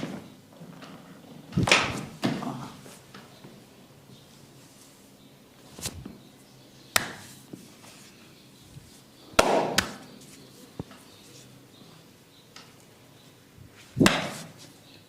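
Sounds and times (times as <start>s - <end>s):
hands slapping a head: 1.6s - 2.4s, 5.8s - 6.2s, 6.9s - 7.4s, 9.4s - 10.1s, 14.0s - 14.7s.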